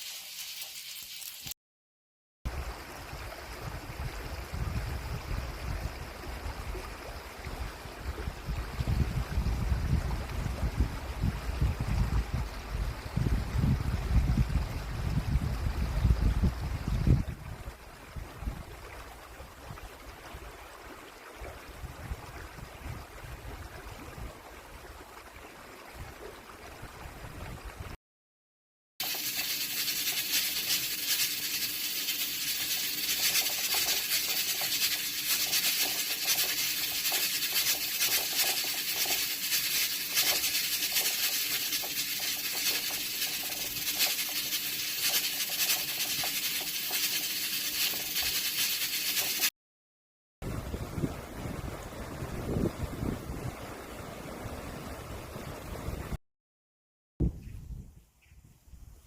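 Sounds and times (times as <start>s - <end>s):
rice cooker hissing and rattling: 0.0s - 1.6s, 29.0s - 49.5s
wind: 2.5s - 28.0s, 29.0s - 49.5s, 50.4s - 56.2s, 57.2s - 59.0s
stream flowing: 17.4s - 27.9s, 29.0s - 49.4s.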